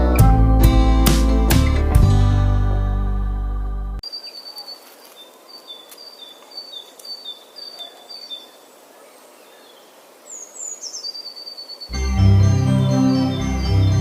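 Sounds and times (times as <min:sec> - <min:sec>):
small bird chirping: 0:04.0 - 0:12.0
faint hiss: 0:04.2 - 0:11.9.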